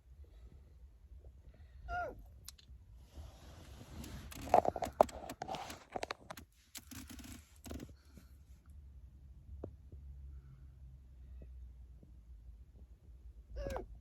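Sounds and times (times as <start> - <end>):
sharp clicks taps and scratching: 4.3 - 7.9.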